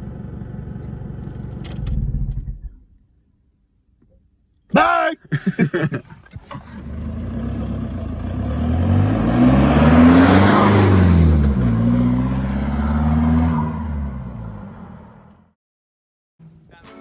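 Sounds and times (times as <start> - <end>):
car engine revving: 6.1 - 15.5.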